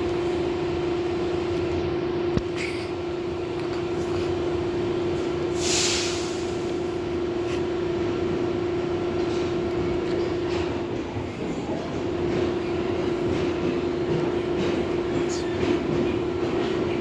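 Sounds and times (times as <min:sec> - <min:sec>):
subway train rumbling: 0:00.0 - 0:17.0
short hiss: 0:05.6 - 0:06.7.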